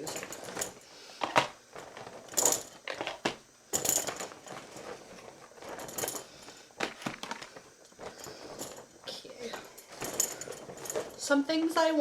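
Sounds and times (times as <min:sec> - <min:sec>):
packaging rustling: 0:04.0 - 0:09.2.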